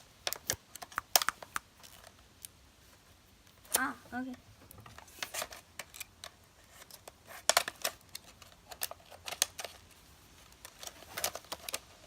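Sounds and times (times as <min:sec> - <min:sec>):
sharp clicks and snaps: 0:00.2 - 0:02.6
plastic packaging pried open: 0:05.2 - 0:12.0.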